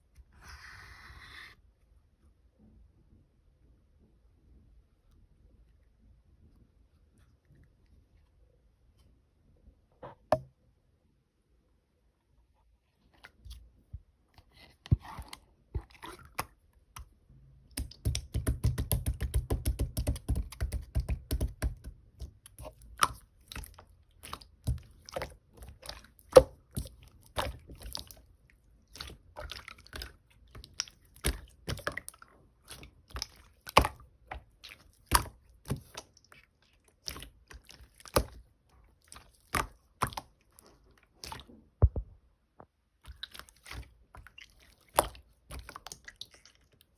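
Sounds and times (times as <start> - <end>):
sticky slime clicking and popping: 17.7 - 28.2.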